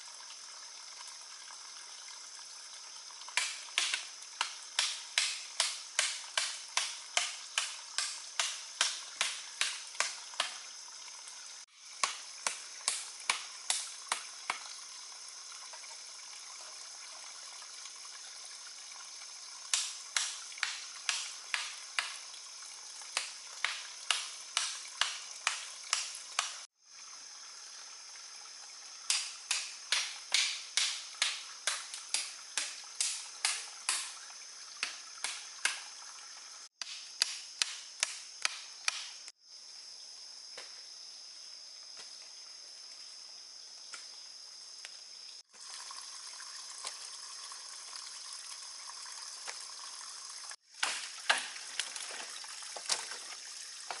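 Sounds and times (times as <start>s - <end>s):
high insect drone: 0.0s - 54.0s
sharp steady knocks: 3.4s - 10.6s, 23.2s - 26.7s, 29.1s - 34.2s, 36.8s - 39.2s.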